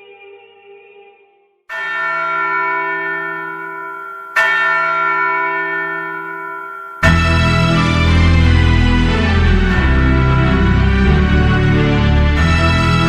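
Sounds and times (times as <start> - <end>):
large bell ringing: 1.7 - 13.0
loud music with heavy bass: 7.0 - 13.0.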